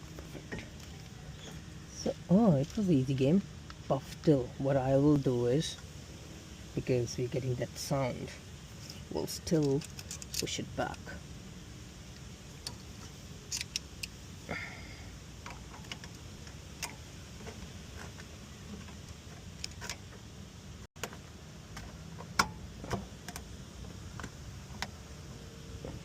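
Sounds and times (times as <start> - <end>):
steady low hum: 0.0 - 26.0.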